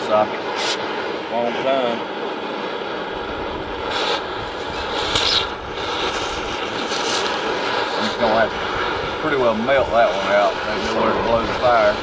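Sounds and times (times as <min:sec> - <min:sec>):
short hissing bursts: 0:00.4 - 0:01.6, 0:03.8 - 0:11.9.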